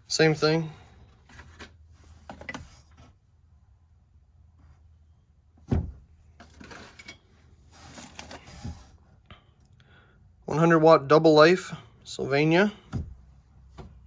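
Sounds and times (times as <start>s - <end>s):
dull thump: 5.6s - 6.1s, 12.9s - 14.0s
cardboard packages rustling: 6.5s - 9.0s.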